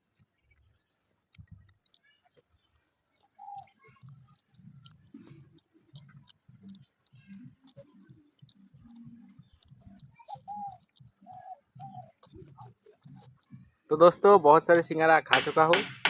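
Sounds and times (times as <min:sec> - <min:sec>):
faint chewing with crunchy clicks: 0:00.0 - 0:14.0
bird calls: 0:03.2 - 0:04.1, 0:08.8 - 0:13.7.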